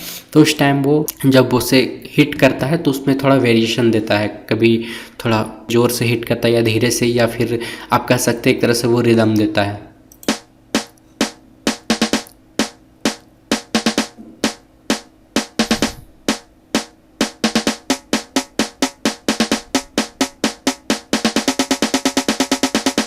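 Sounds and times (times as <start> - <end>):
snare drum roll: 10.3 - 23.0.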